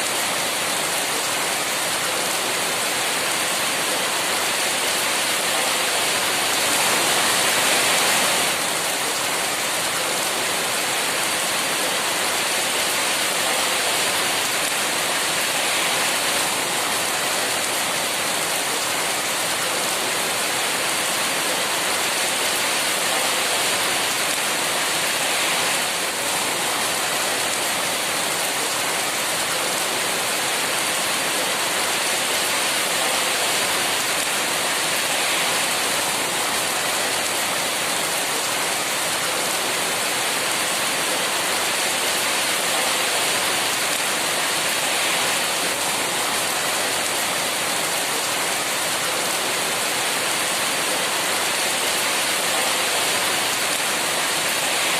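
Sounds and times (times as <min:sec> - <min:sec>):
heavy rain: 0:00.0 - 0:54.9.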